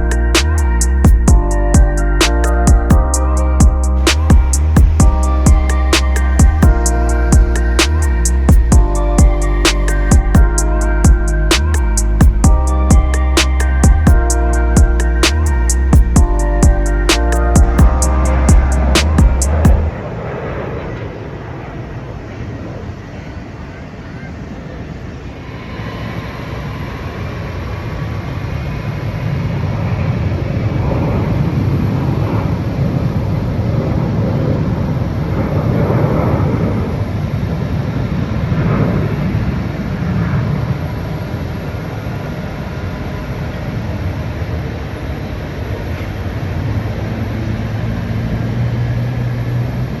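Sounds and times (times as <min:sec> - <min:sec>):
large vehicle passing rumble: 0:02.8 - 0:22.0.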